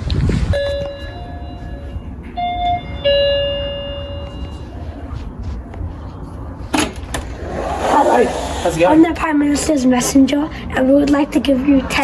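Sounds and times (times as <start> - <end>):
doorbell chime: 0.6 - 4.8.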